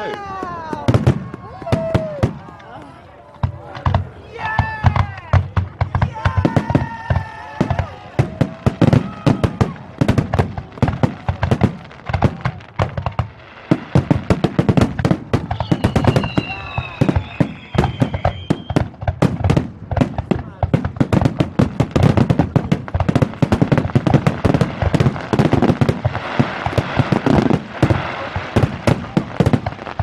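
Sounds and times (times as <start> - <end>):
fireworks bangs and crackling: 0.0 - 30.0
fireworks whistling: 6.3 - 19.6, 22.0 - 30.0.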